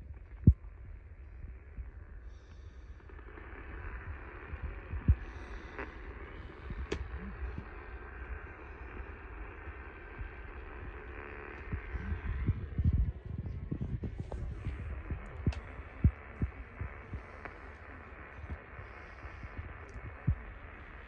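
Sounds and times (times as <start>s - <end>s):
radio hiss: 0.0s - 21.0s
low thumping: 11.6s - 17.4s.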